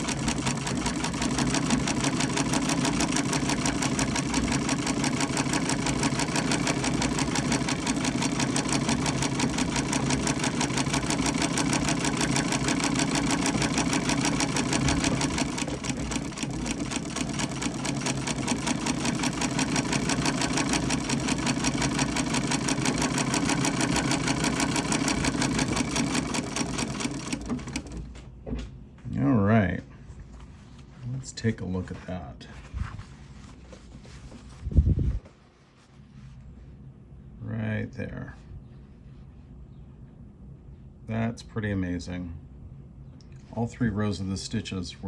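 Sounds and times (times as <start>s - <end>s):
treadle sewing machine clattering: 0.0s - 28.2s.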